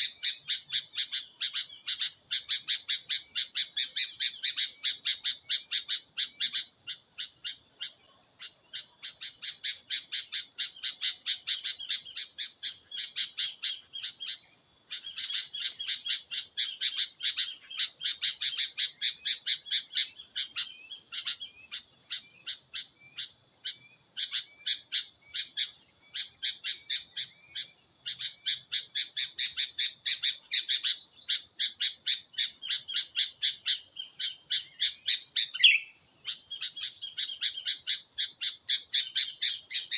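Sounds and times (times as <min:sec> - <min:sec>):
birds chirping: 0:32.4 - 0:39.9.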